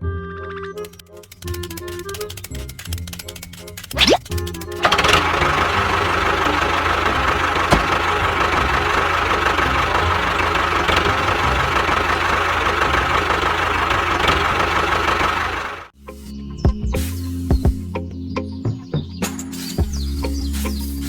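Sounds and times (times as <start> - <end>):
small machine motor running: 4.7 - 15.9.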